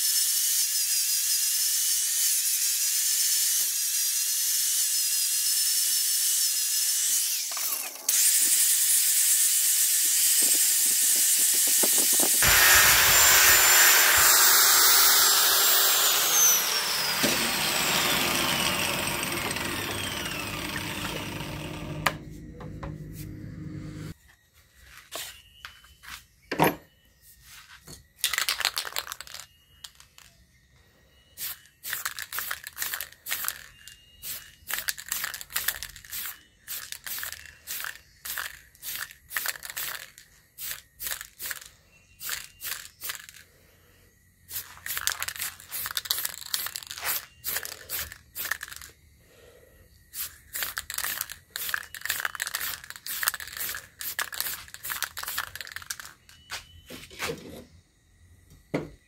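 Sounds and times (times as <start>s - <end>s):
hand rubbing strokes: 22.3s - 24.1s.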